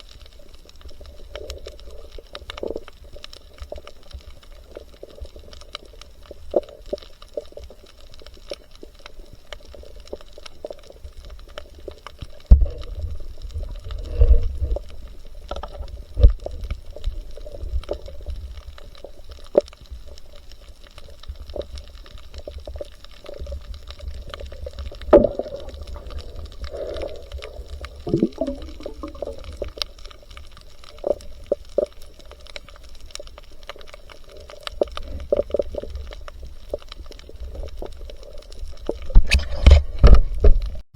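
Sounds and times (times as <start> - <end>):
muffled water sloshing and bubbling: 0.0 - 40.8
low underwater rumble: 10.9 - 20.1, 21.2 - 40.8.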